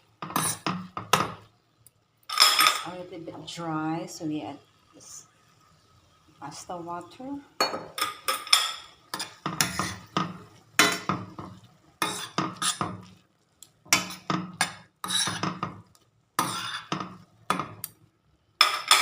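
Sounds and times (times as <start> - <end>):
utensil scraping a pan: 0.2 - 1.2, 9.1 - 13.1, 13.9 - 15.8, 16.4 - 17.6.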